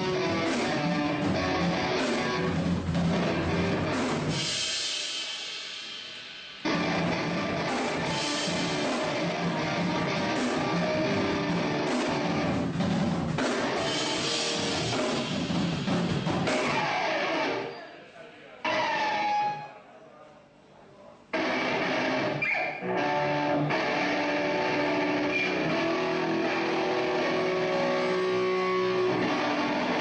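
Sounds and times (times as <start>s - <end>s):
metal band playing live: 0.0s - 17.8s, 18.6s - 19.6s, 21.3s - 30.0s.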